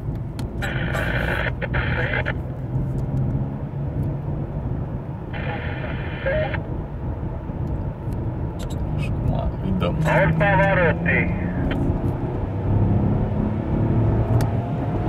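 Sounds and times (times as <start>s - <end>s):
car engine at full throttle: 0.0s - 15.0s
higher-pitched whine: 0.6s - 2.4s, 5.4s - 6.7s.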